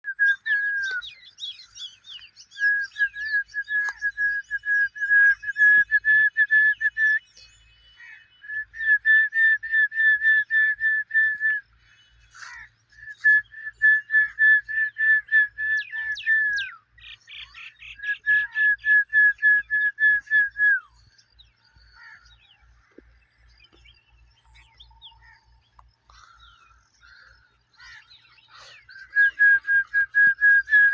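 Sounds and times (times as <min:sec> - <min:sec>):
faint chirps: 0:11.3 - 0:14.4, 0:20.8 - 0:30.9.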